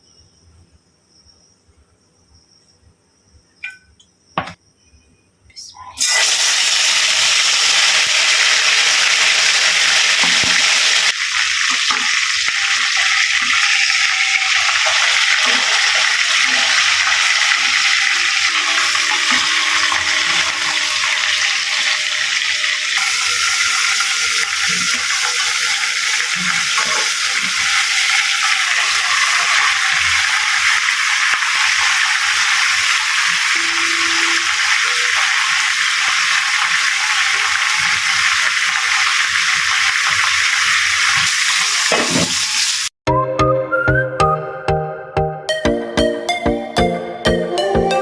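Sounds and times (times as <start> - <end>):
chicken sizzling in hot oil: 6.0 - 43.0.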